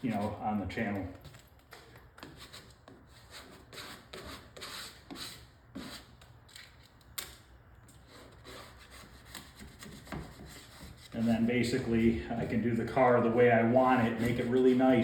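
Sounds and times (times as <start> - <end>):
faint rubbing swipes: 8.1 - 15.0.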